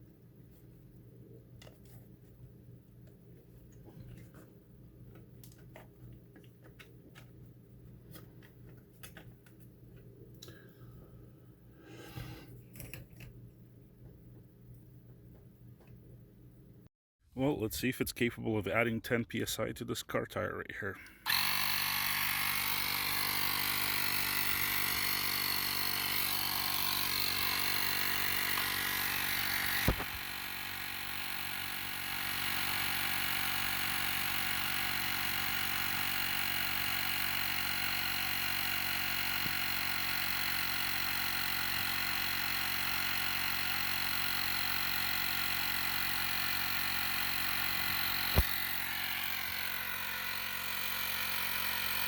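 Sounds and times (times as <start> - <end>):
tire inflator compressor running: 0.0 - 13.2, 21.0 - 52.0
sharp click: 29.8 - 30.2, 48.3 - 48.6.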